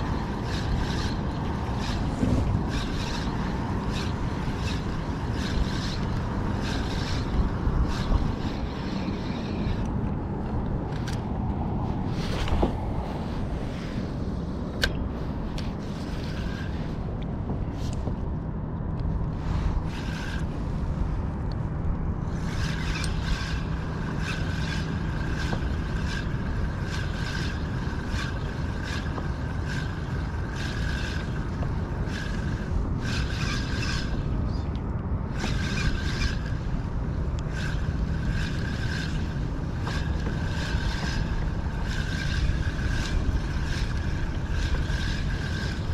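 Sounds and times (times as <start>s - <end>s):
fishing reel whirring: 0.0s - 12.6s, 15.5s - 17.2s, 19.3s - 21.2s, 22.2s - 34.6s, 35.2s - 45.9s.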